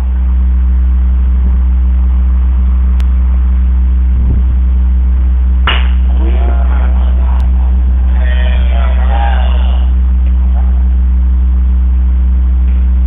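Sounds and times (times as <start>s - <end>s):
low electrical hum: 0.0s - 13.0s
sharp smack: 5.6s - 6.0s.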